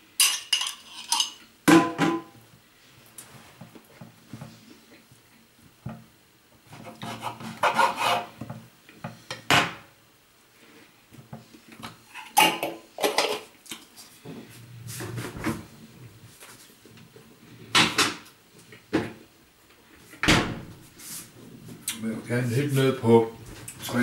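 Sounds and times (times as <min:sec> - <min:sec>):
objects rubbing and scraping: 0:13.2 - 0:16.8.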